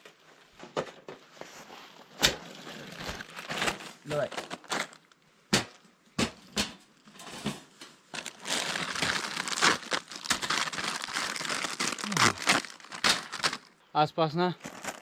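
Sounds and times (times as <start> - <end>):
packaging crinkling: 2.5 - 5.2, 8.1 - 13.8, 14.6 - 15.0.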